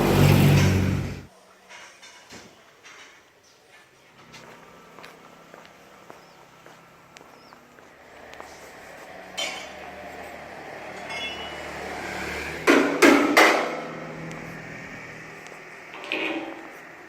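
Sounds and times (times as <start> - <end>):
steady background noise: 0.0 - 17.0
sharp ringing knocks: 11.0 - 11.6.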